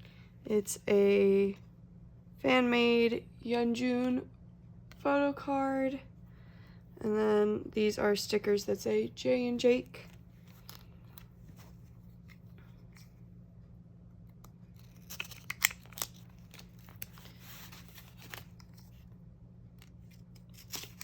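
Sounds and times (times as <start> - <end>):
faint steady hum: 0.0 - 21.0
packaging rustling: 14.7 - 19.1
packaging clicks: 14.8 - 18.8.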